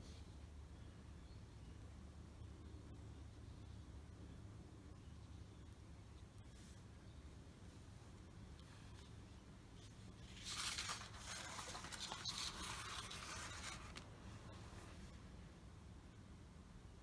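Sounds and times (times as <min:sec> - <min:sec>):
brush scratching a surface: 0:10.2 - 0:14.0.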